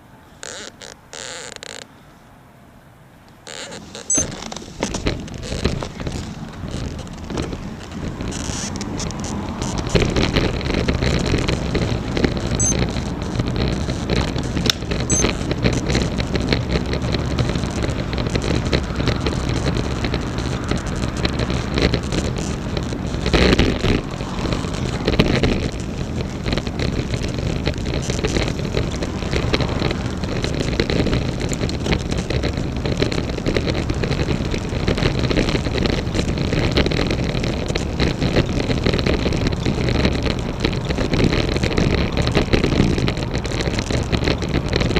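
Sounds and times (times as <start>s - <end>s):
bike bag rattling: 3.5s - 32.8s, 39.4s - 44.6s
wind buffeting microphone: 4.1s - 44.9s.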